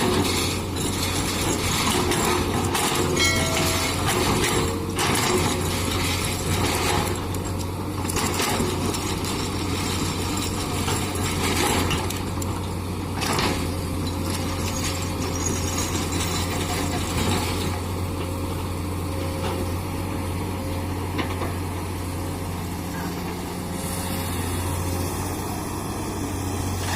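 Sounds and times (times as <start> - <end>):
excavator diesel engine under load: 0.0 - 26.9.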